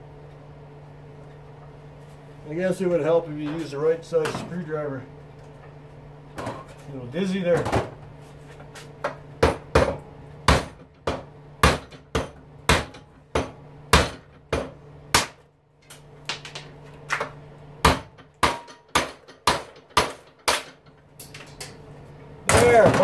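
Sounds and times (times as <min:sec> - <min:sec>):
hammer striking chisel on metal: 0:09.4 - 0:15.3, 0:17.8 - 0:20.8.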